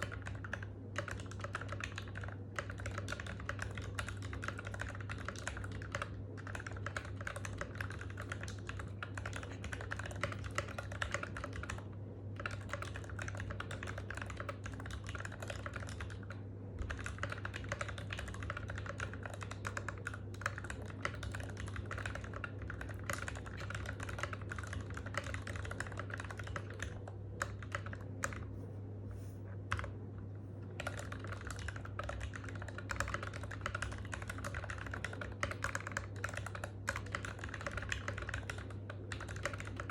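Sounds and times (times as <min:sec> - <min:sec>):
fast mechanical keyboard typing: 0:00.0 - 0:28.5, 0:30.8 - 0:39.9
steady low hum: 0:00.0 - 0:39.9.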